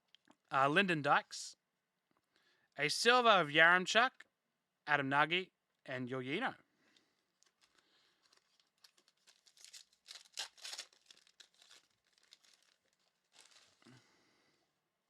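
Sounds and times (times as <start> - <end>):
wrapper rustle: 7.2 - 14.0
card pack wrapper tearing: 7.4 - 14.0.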